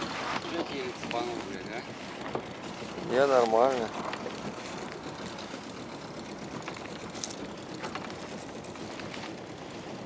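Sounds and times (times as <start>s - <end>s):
small boat on water: 0.0s - 10.0s.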